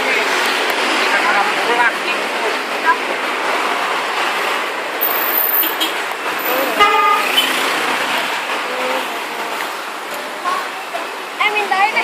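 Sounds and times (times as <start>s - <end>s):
bus horn blast: 6.8s - 7.6s.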